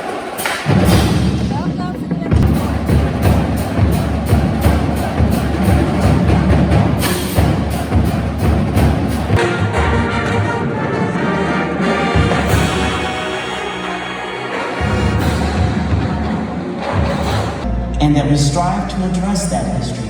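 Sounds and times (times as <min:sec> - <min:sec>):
music with fast percussive beat: 0:00.1 - 0:10.0.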